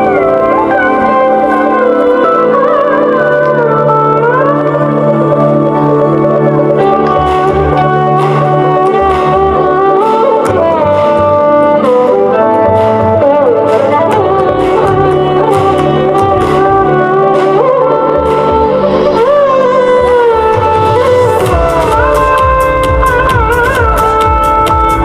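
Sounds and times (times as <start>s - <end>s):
sliding melody of held notes: 0.0s - 25.0s
percussive strikes: 6.8s - 25.0s.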